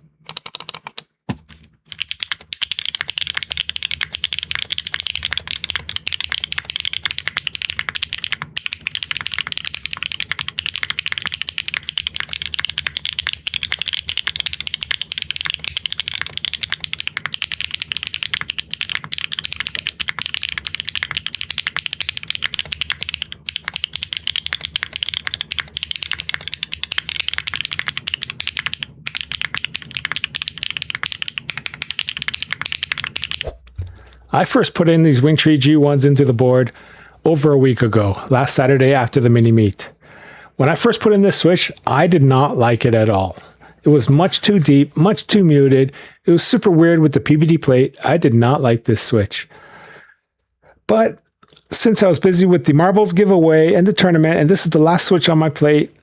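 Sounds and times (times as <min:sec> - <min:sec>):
mechanical keyboard typing: 0:00.2 - 0:34.1, 0:40.7 - 0:43.6.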